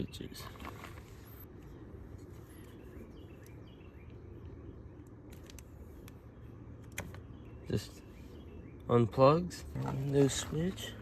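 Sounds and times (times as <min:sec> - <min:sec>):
bird-like chirps: 0:01.6 - 0:09.5.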